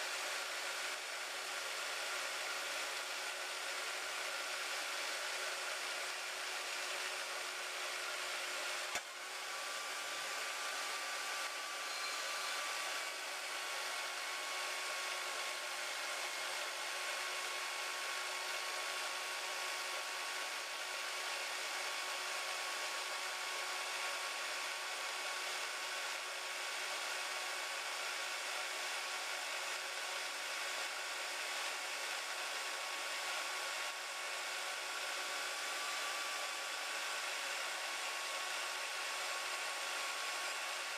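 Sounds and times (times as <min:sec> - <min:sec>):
band saw cutting metal: 0:07.2 - 0:17.8.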